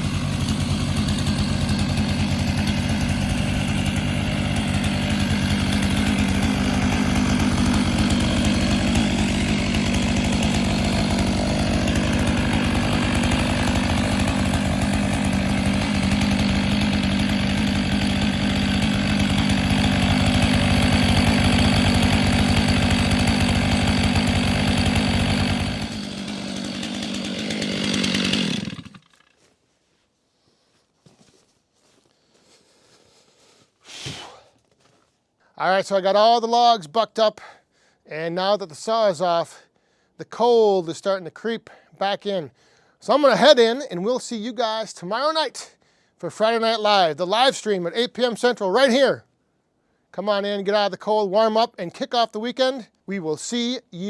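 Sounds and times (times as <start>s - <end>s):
chainsaw cutting logs: 0.0s - 29.5s, 33.9s - 34.5s, 40.3s - 45.7s, 46.3s - 49.2s, 50.2s - 54.0s.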